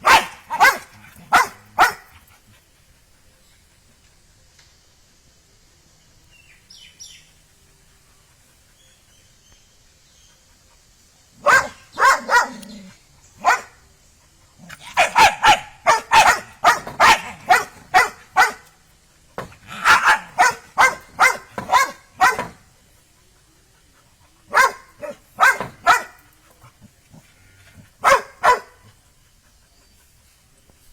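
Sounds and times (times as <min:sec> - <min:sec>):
dog barking: 0:00.0 - 0:02.1, 0:11.4 - 0:12.7, 0:13.4 - 0:13.7, 0:14.9 - 0:18.7, 0:19.8 - 0:22.6, 0:24.5 - 0:26.2, 0:28.0 - 0:28.9.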